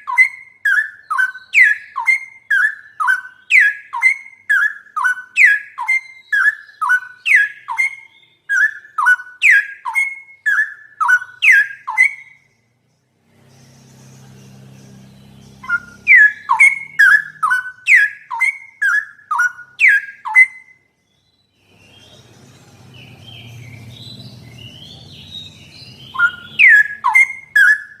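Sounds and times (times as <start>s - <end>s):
bird singing whistled notes: 0.0s - 28.0s
bird warbling: 13.3s - 20.7s, 21.7s - 28.0s.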